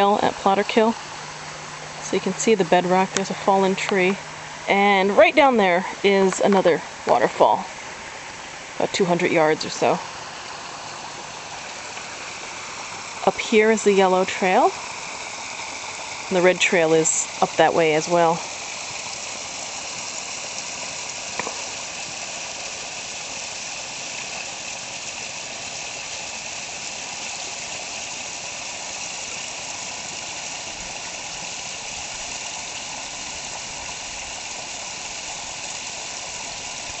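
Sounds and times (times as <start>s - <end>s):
waterfall over rock: 0.0s - 37.0s.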